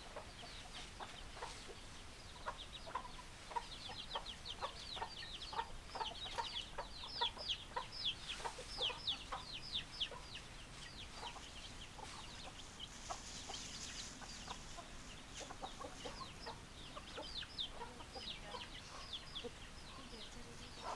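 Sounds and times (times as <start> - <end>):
chickens clucking: 0.0 - 20.9.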